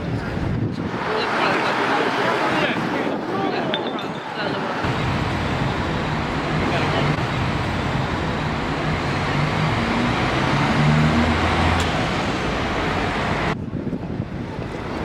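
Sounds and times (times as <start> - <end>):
passing vehicles rushing: 4.2 - 13.6
engine humming nearby: 4.9 - 13.6.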